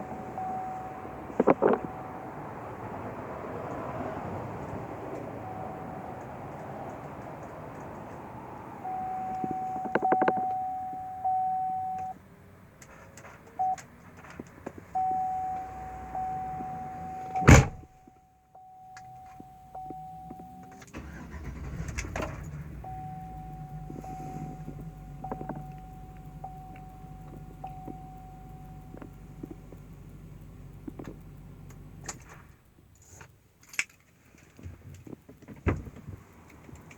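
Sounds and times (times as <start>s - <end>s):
warning chime steady tone: 0.0s - 2.8s, 5.3s - 6.8s, 8.7s - 12.2s, 15.0s - 21.9s, 22.6s - 29.5s
door slam: 17.4s - 17.9s
engine starting and idling: 19.8s - 32.6s.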